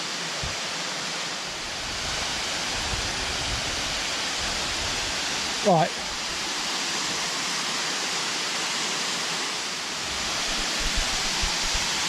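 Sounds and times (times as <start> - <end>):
waterfall roaring: 0.0 - 12.0
soft low bumps: 10.2 - 11.8.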